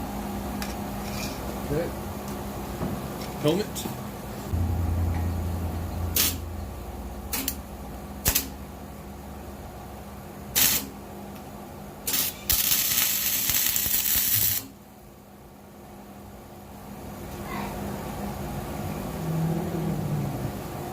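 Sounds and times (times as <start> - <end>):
arc welding crackle: 6.1 - 6.4, 7.3 - 7.6, 8.2 - 8.6, 10.5 - 11.0, 12.0 - 14.8.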